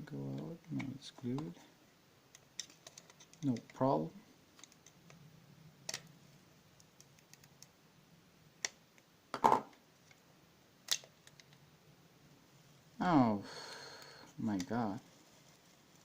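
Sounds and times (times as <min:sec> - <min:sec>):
plastic parts clicking and knocking: 0:02.3 - 0:03.8.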